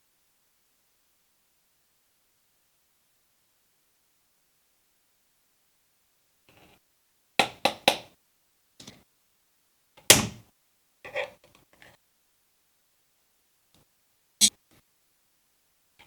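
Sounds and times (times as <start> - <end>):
sharp knocks and thunks: 10.1 - 10.4.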